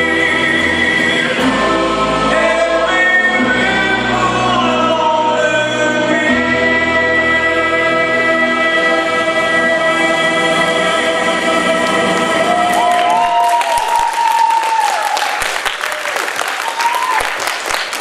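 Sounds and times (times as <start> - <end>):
choral singing over held chords: 0.0 - 13.3.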